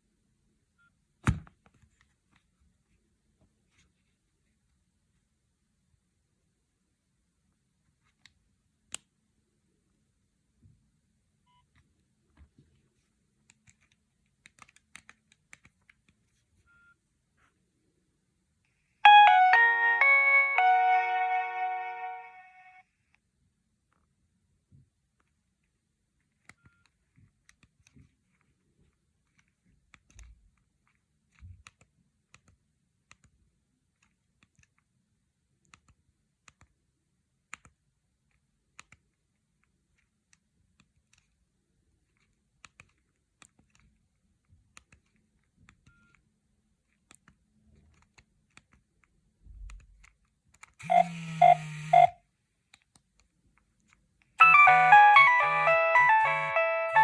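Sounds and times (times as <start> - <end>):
electronic phone tones: 19.1 - 22.8, 50.8 - 52.2, 54.4 - 57.0
phone keypad buttons clicking: 50.9 - 52.1.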